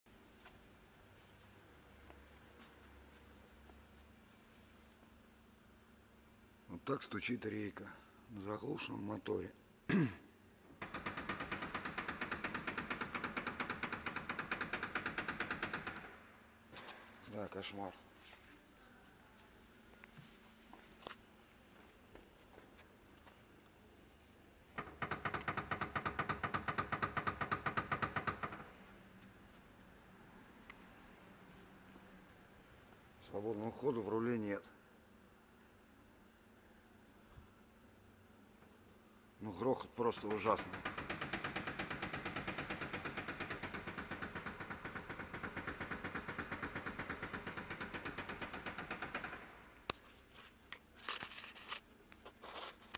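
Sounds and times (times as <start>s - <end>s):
steering rack knocking: 40.3s - 49.5s.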